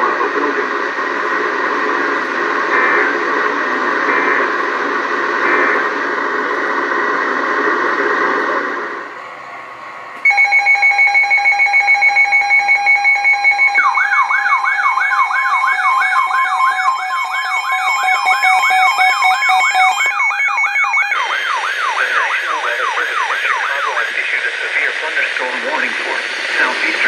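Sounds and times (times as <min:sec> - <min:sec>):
rapidly pulsing alarm beep: 0:04.0 - 0:04.5, 0:10.3 - 0:24.2
fast up-and-down siren sweep: 0:10.3 - 0:24.1.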